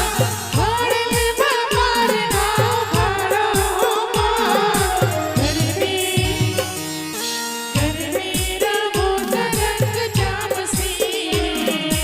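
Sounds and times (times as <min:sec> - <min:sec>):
pitched drum hits: 0:00.0 - 0:06.9.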